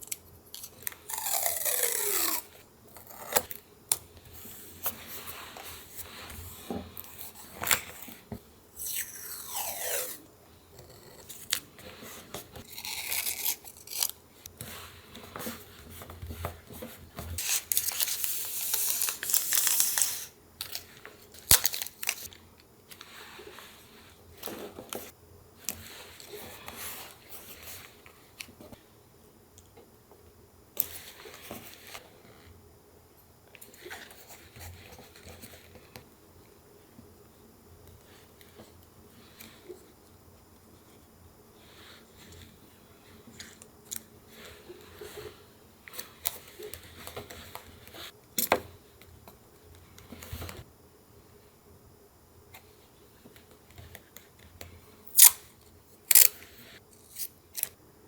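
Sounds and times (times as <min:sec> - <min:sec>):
paper tearing and rustling: 0:00.9 - 0:02.6, 0:12.7 - 0:14.1, 0:17.4 - 0:20.3.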